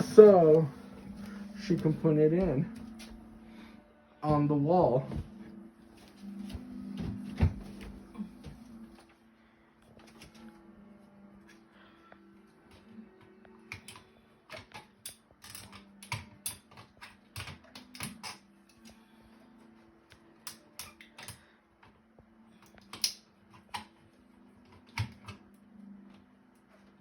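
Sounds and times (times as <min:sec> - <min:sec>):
steady low hum: 0:00.0 - 0:14.5.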